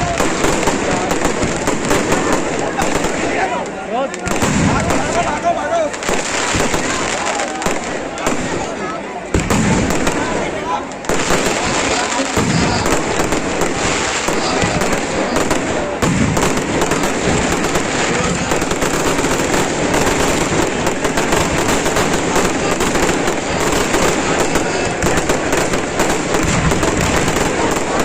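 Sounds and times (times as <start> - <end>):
fireworks crackling and banging: 0.0 - 28.0.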